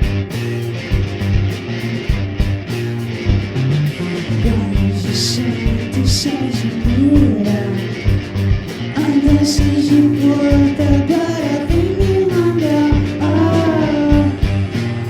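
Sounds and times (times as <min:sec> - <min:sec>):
drum beat: 0:00.0 - 0:15.0
guitar: 0:00.0 - 0:15.0
person singing: 0:04.0 - 0:08.1, 0:08.9 - 0:14.6.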